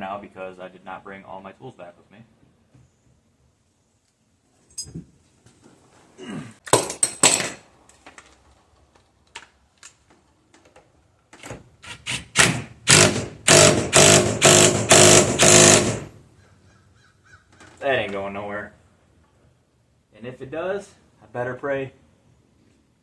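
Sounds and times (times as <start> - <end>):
impact wrench hammering: 12.2 - 16.2.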